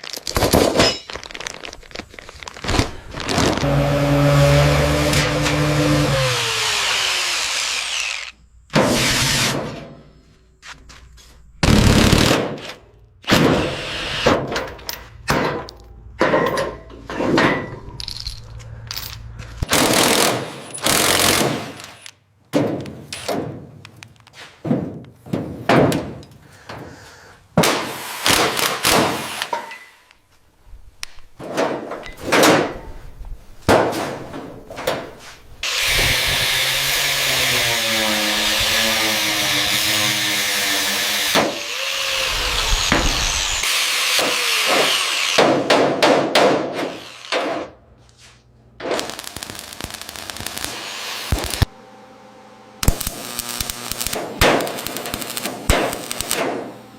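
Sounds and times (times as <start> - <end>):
power tool running: 3.4 - 8.4, 35.6 - 45.4, 46.8 - 47.4, 49.0 - 56.9.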